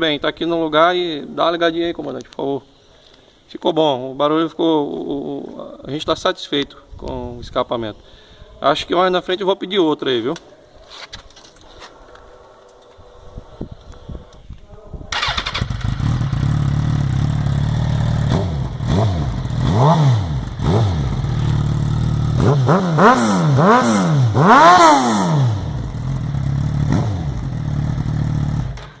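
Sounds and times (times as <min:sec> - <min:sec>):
motorcycle engine revving: 0:15.1 - 0:29.0.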